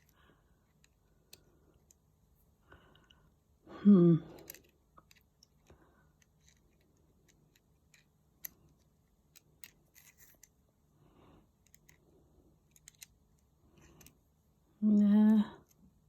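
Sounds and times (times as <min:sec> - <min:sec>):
small camera parts clicking: 0:12.7 - 0:13.1.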